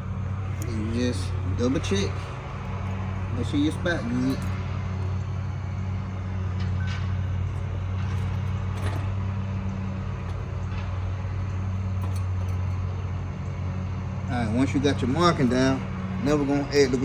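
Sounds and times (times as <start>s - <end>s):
low mechanical hum: 0.0s - 17.0s
handling clicks and rustles: 0.3s - 13.9s.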